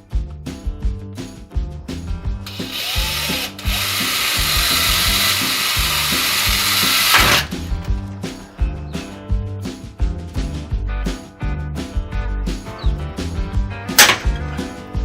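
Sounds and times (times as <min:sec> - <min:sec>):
background music with steady beat: 0:00.0 - 0:15.0
power tool running: 0:02.5 - 0:07.5.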